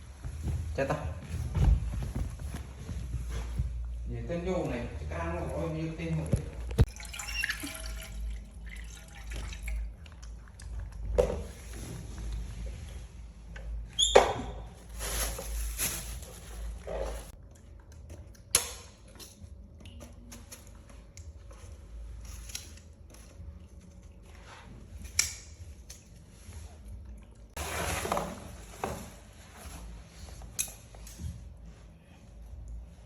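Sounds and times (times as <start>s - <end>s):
rustling scrape: 14.9s - 17.4s, 27.6s - 30.5s.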